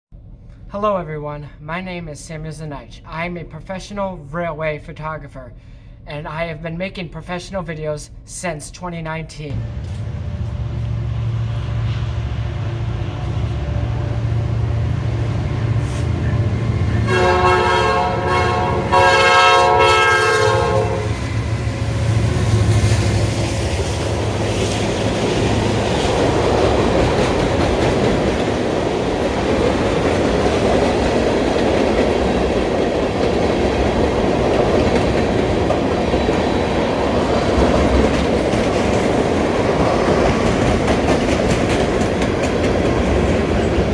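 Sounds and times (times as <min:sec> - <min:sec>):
locomotive horn chord: 0:09.5 - 0:21.2
diesel locomotive engines rumbling: 0:09.5 - 0:43.9
freight cars rumbling past: 0:09.5 - 0:43.9
wheels clacking on rails: 0:09.5 - 0:43.9.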